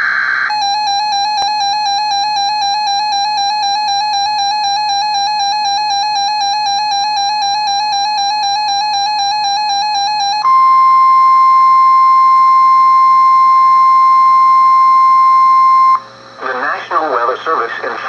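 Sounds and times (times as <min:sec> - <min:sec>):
steady electronic alert tone: 0:00.5 - 0:11.3.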